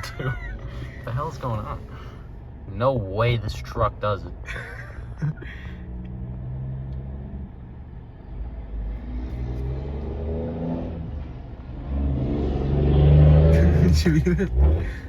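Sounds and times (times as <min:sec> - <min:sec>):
truck engine accelerating: 0:05.2 - 0:15.0.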